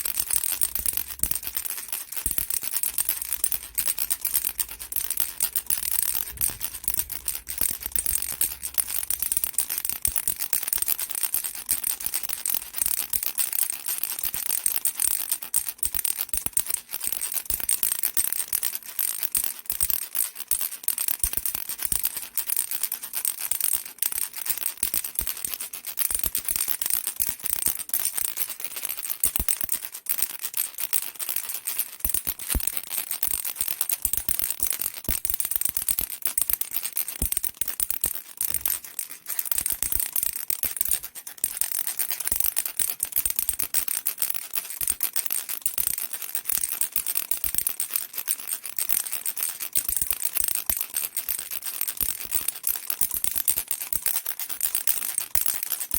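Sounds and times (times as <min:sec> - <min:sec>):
baby rattle shaken: 0:00.0 - 0:55.9.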